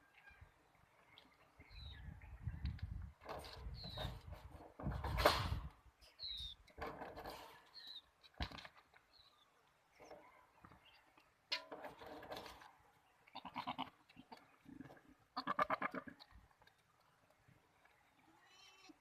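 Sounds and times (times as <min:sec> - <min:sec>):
goats bleating: 0:13.3 - 0:14.0, 0:15.4 - 0:16.2.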